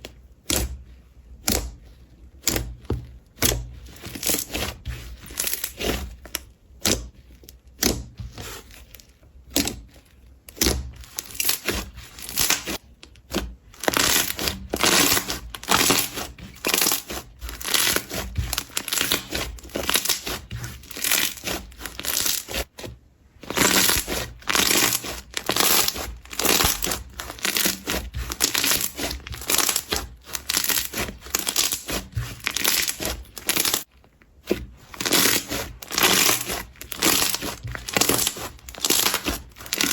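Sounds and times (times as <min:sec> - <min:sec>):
slime squeezed clicking and crackling: 0:09.5 - 0:22.6, 0:23.5 - 0:33.9, 0:34.9 - 0:39.9.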